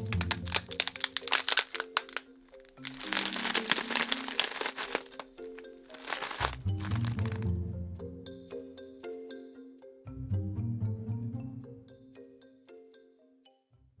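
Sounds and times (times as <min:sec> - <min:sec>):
sharp crackling clicks: 0:00.0 - 0:07.4.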